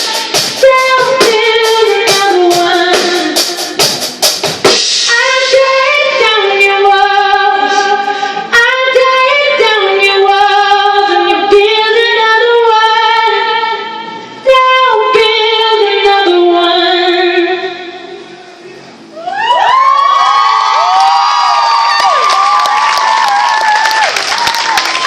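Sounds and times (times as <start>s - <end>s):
woman singing with vibrato: 0.0s - 3.8s, 5.1s - 18.7s
backing music: 0.0s - 6.8s
crowd cheering and whooping: 19.1s - 25.0s.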